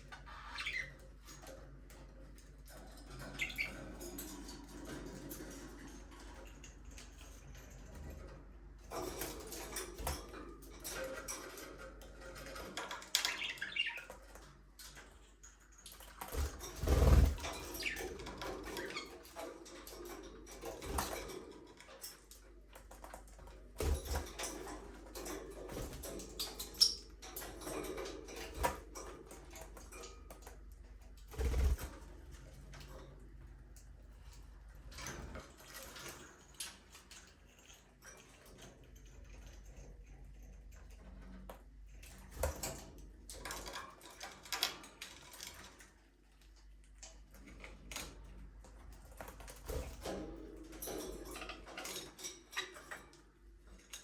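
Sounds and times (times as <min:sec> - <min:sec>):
wings flapping: 0:16.3 - 0:18.0, 0:31.3 - 0:32.0.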